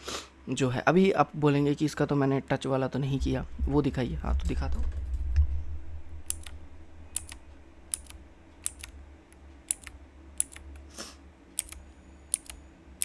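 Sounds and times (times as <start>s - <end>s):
mechanical keyboard keys clicking: 6.2s - 10.9s, 11.6s - 12.6s.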